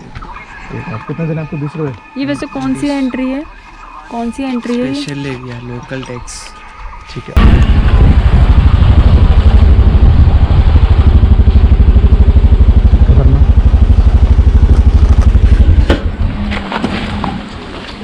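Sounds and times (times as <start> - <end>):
motor scooter engine throbbing: 7.4 - 17.7.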